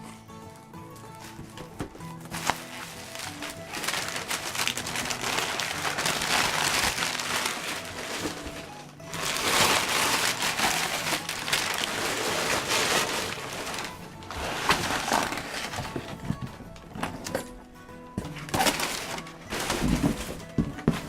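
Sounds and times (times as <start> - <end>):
faint music: 0.0 - 21.0
packaging crinkling and tearing: 2.1 - 16.7, 18.3 - 20.6.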